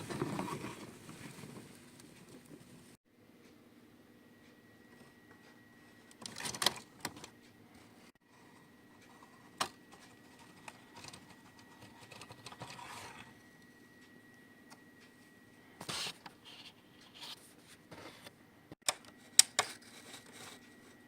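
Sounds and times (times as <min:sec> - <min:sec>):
soft scraping rustle: 0:00.0 - 0:03.0
faint steady hum: 0:00.0 - 0:21.0.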